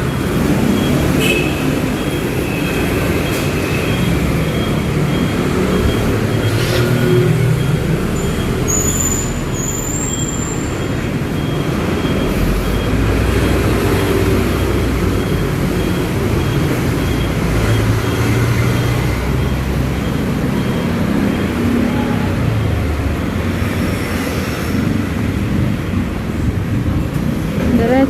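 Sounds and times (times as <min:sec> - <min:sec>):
street traffic: 0:00.0 - 0:28.0.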